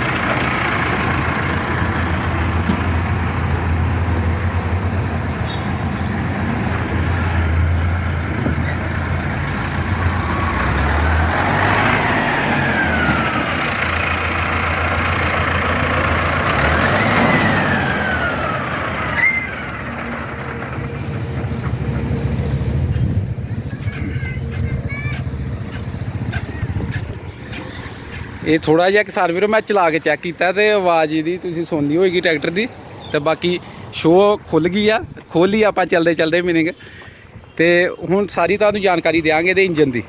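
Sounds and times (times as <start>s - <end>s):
tractor diesel engine running: 0.0s - 29.2s.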